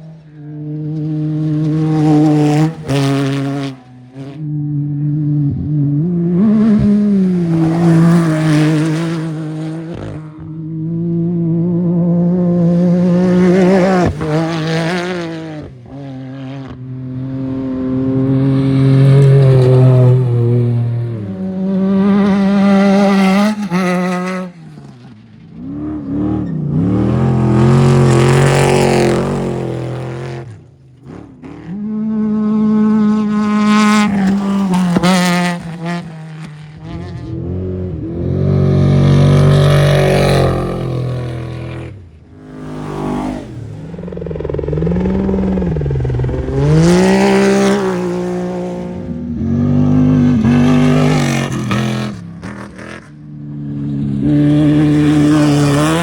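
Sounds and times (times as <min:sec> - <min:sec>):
engines revving through gears: 0:00.0 - 0:56.0
off-road vehicles passing: 0:00.0 - 0:56.0.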